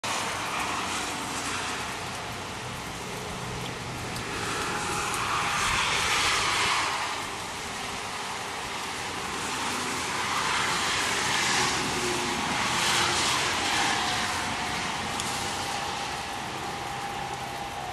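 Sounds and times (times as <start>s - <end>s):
steady rain falling: 0.0s - 17.9s.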